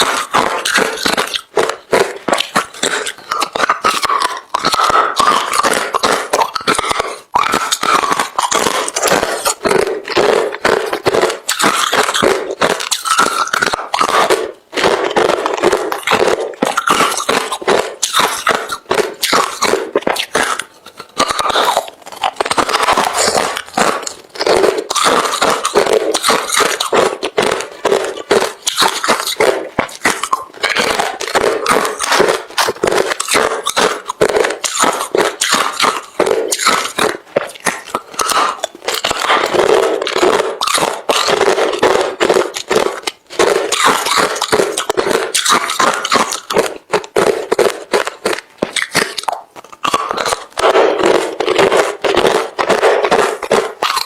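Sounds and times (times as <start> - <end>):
crunchy ice chewing: 0.0 - 54.0.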